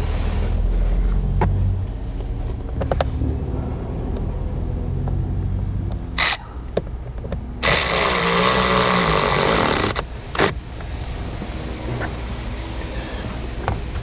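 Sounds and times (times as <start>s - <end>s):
power driver spinning screw: 7.6s - 10.5s.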